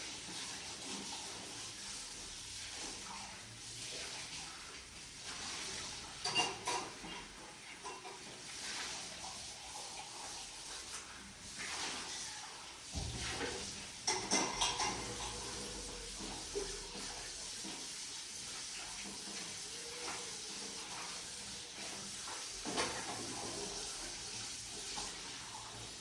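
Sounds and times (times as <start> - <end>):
pots and dishes clinking: 5.9 - 8.5, 12.9 - 17.1, 19.0 - 24.1.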